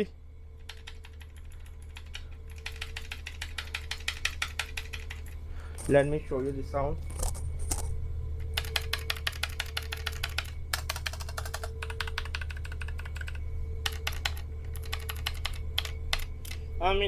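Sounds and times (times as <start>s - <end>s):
mechanical keyboard switches clicking: 8.6s - 16.6s.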